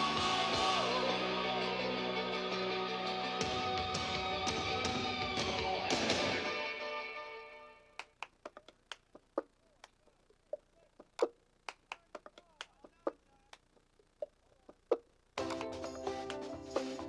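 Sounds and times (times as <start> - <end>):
song playing: 0.0 - 7.7, 15.4 - 17.0
faint clicks and taps: 8.0 - 17.0.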